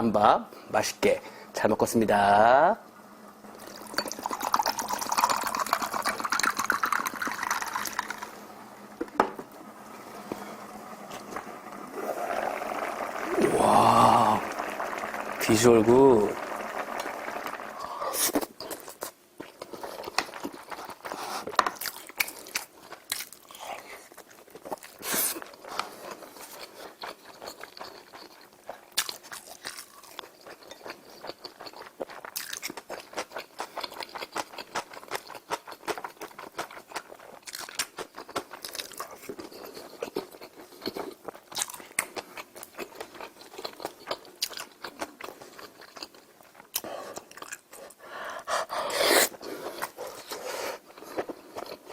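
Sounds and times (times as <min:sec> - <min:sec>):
person chewing and crunching: 0:16.4 - 0:51.9.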